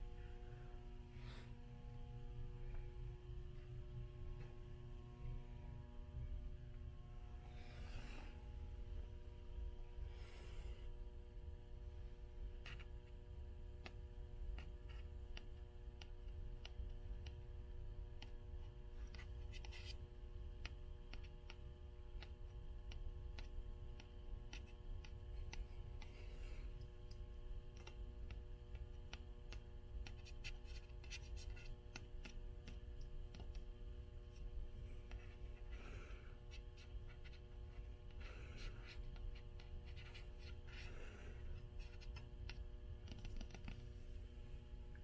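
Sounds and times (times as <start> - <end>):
faint steady hum: 0.0 - 45.0
scratches on cloth and paper: 30.0 - 32.8, 36.5 - 43.9.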